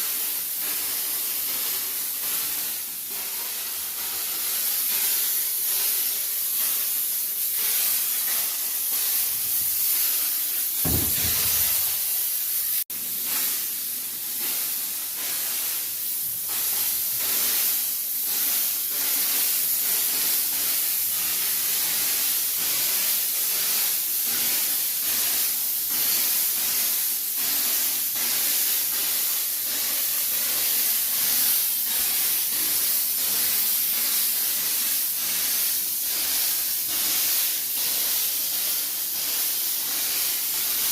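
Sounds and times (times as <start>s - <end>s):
sprayer hissing: 0.0s - 40.9s
short low thump: 10.8s - 12.0s.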